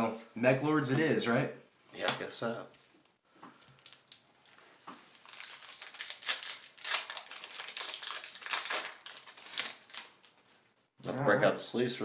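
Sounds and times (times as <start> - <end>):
foil wrapper crinkling and tearing: 3.7 - 10.4.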